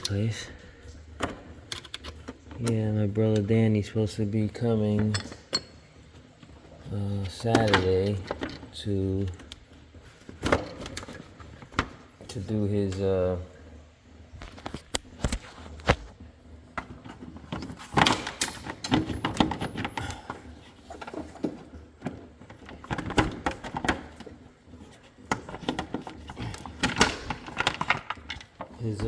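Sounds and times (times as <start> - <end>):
hand tools clicking and rattling: 16.8 - 29.0.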